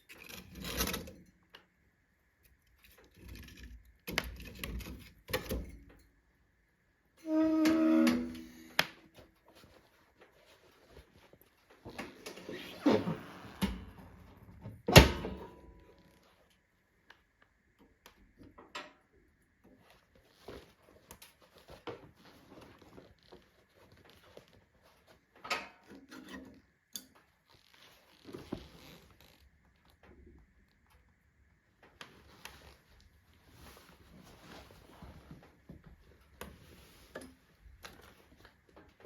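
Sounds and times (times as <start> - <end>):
wood stove knocks and crackles: 14.6 - 15.8.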